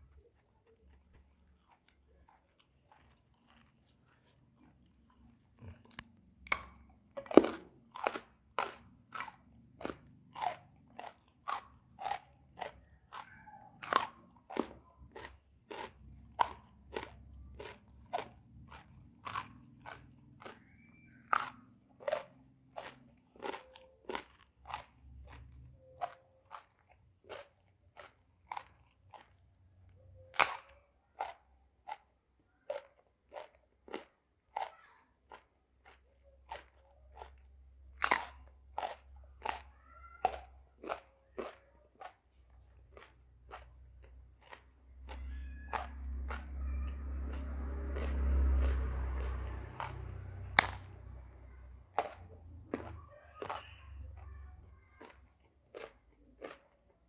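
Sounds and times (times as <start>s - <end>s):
chewing crisp raw vegetables: 0.0s - 57.0s.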